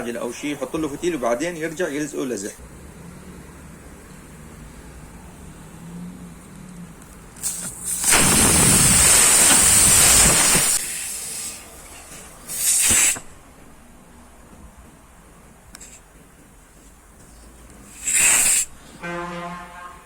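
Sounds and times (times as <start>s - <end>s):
compressed air hissing: 7.4s - 13.4s, 17.8s - 19.0s.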